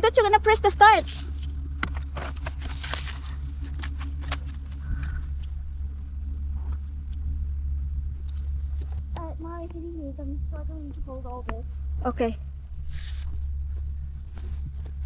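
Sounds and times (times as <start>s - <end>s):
car engine idling: 0.0s - 15.0s
clicks and rustling: 1.0s - 5.6s.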